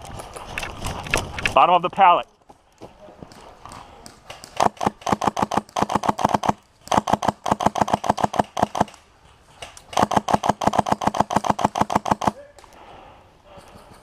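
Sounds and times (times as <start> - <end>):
airsoft rifle full-auto bursts: 4.5 - 9.0, 9.9 - 12.4.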